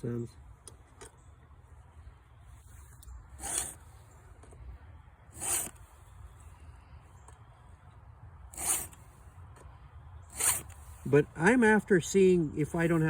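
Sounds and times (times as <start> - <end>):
file scraping chainsaw chain: 3.3 - 3.9, 5.3 - 5.8, 8.5 - 9.0, 10.3 - 11.1.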